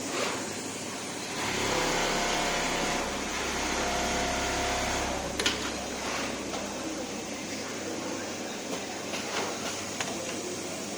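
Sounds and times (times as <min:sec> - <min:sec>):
sewing machine motor hum: 0:01.2 - 0:06.5.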